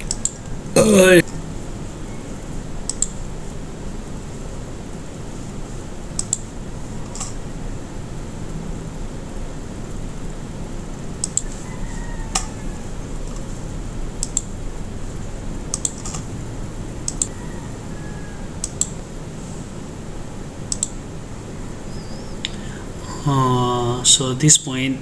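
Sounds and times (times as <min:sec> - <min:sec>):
computer mouse clicks: 0:00.0 - 0:00.5, 0:02.9 - 0:03.2, 0:06.1 - 0:06.5, 0:11.2 - 0:11.6, 0:14.2 - 0:14.6, 0:15.7 - 0:16.2, 0:17.0 - 0:17.4, 0:18.6 - 0:19.0, 0:20.7 - 0:21.0
steady background hum: 0:00.0 - 0:25.0.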